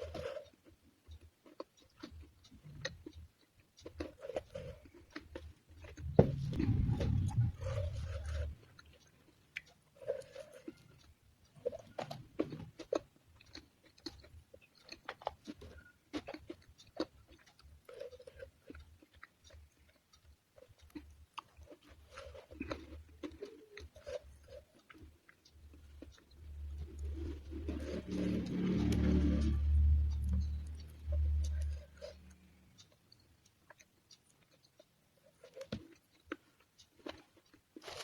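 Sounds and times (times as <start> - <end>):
wet mouth clicks: 0.0 - 11.0
person chewing: 0.0 - 38.0.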